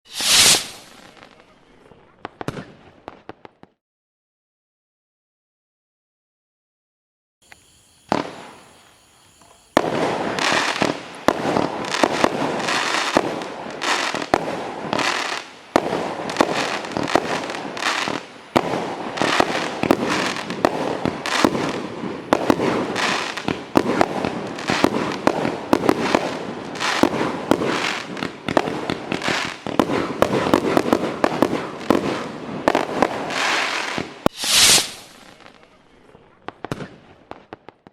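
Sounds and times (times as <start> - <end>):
sharp firework bangs: 0.1 - 1.1, 8.1 - 35.8, 36.4 - 37.8
firework fizzing: 0.1 - 1.5, 7.4 - 37.8
firework crackling: 0.1 - 3.7, 7.4 - 37.9.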